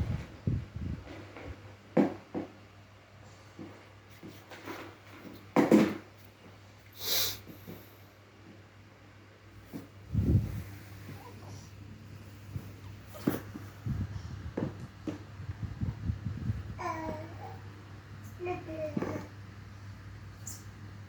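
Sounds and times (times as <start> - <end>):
short hiss: 7.0 - 7.9.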